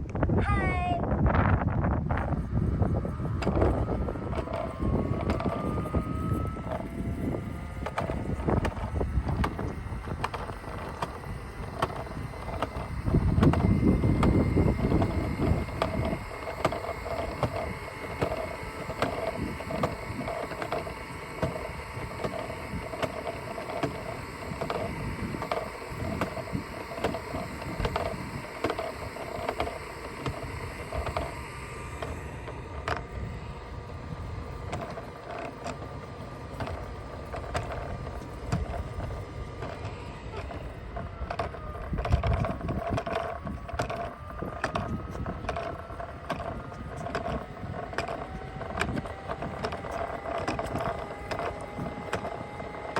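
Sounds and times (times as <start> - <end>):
wind rumble on microphone: 0.0 - 31.4, 32.0 - 52.9
robot vacuum motor whine: 0.2 - 52.9.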